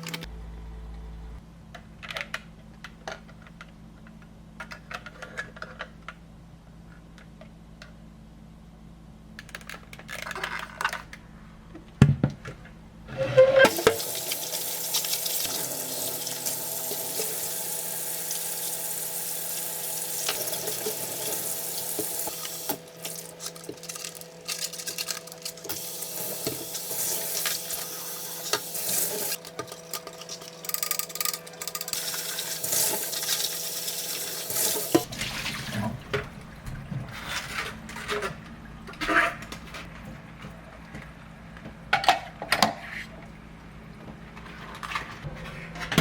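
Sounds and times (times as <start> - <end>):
tap water running into sink: 13.7 - 37.1.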